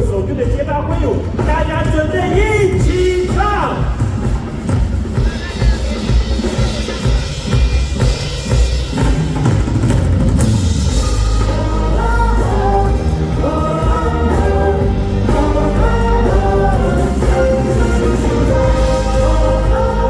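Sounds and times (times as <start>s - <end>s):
heavy drum and bass beat: 0.0s - 20.0s
live pop band playing: 0.0s - 20.0s
person singing: 11.2s - 20.0s.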